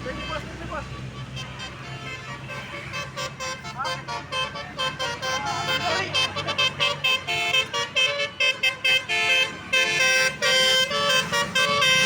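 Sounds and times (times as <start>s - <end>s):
musical horn playing a melody: 0.1s - 12.0s.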